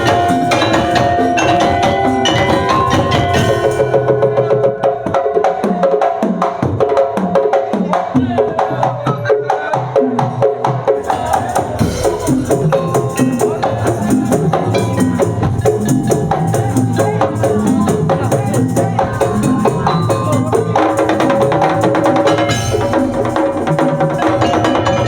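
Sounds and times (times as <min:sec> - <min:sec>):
wooden slit drums: 0:00.0 - 0:05.8, 0:11.0 - 0:25.0
drums: 0:00.0 - 0:25.0
pitched percussion: 0:00.0 - 0:25.0.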